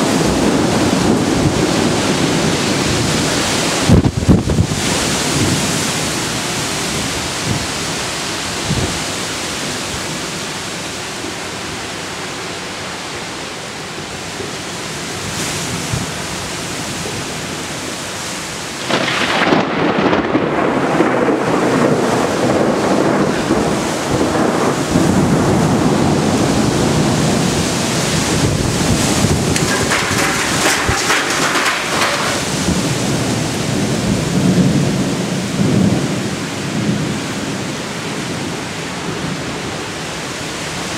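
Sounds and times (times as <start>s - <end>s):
rolling thunder: 0.0s - 6.2s, 18.8s - 38.4s
heavy rain: 0.0s - 40.9s
wind: 0.0s - 40.9s.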